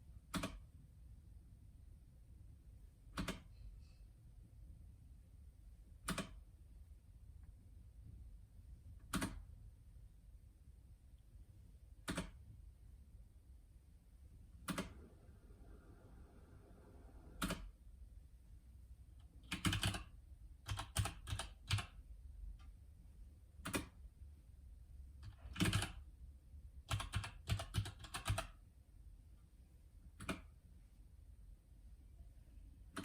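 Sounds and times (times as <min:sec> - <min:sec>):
mechanical keyboard keystrokes: 0:00.3 - 0:00.6, 0:03.2 - 0:03.5, 0:06.0 - 0:06.4, 0:09.0 - 0:09.5, 0:12.1 - 0:12.4, 0:14.6 - 0:15.0, 0:17.4 - 0:17.7, 0:19.4 - 0:22.0, 0:23.6 - 0:24.0, 0:25.2 - 0:26.0, 0:26.8 - 0:28.6, 0:30.2 - 0:30.5.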